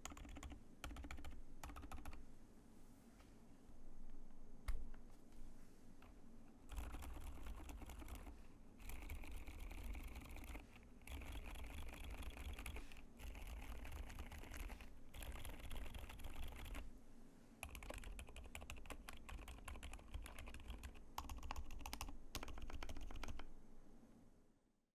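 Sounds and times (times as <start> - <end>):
fast typing on keyboard: 0.0 - 2.2, 6.7 - 16.9, 17.6 - 23.5.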